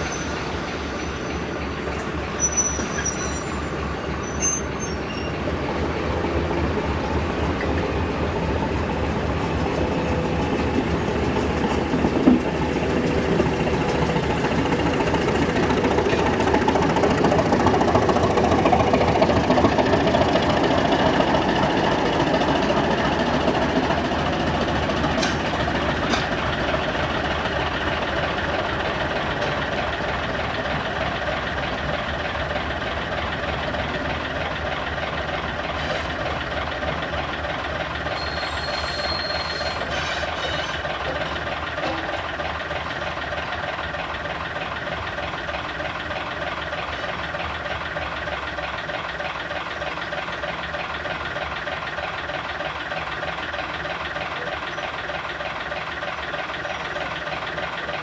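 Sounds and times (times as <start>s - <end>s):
diesel train running: 0.0s - 58.0s
short high-pitched squeal: 2.4s - 5.4s, 38.2s - 40.8s.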